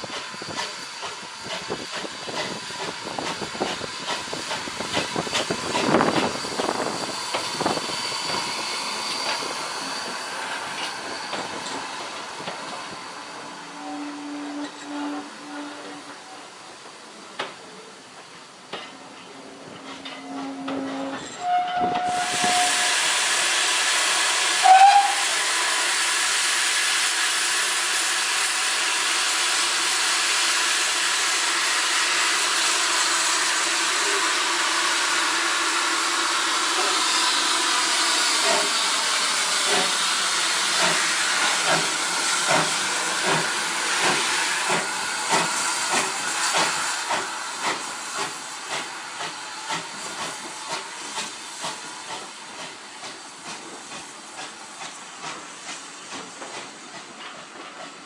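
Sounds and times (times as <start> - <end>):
steam locomotive hissing steam: 0.0 - 58.0
steam whistle toot: 13.6 - 16.6, 20.2 - 25.9.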